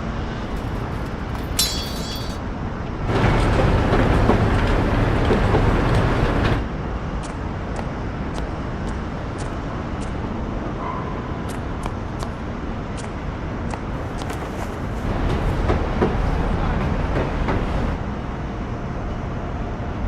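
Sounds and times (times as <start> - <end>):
low rumbling ambient noise: 0.0 - 15.6.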